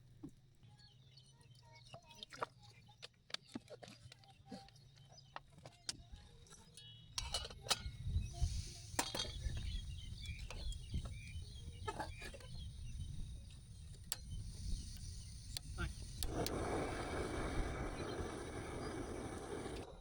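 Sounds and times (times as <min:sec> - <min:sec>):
cookware and utensils clinking: 0:07.2 - 0:08.0.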